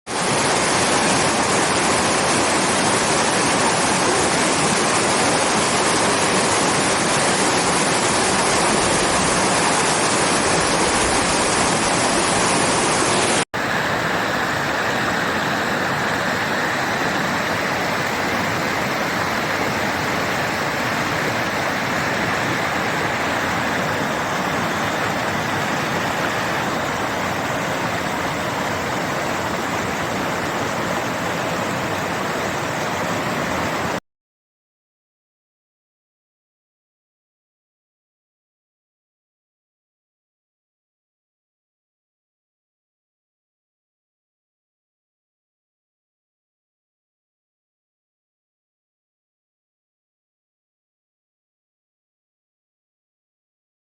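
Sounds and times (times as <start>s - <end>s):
waterfall rushing: 0.1s - 34.0s.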